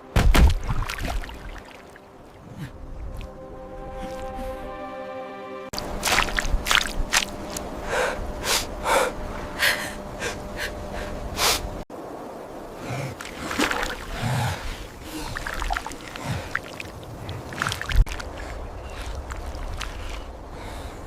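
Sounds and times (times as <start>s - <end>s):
person gasping for breath: 14.1s - 16.7s.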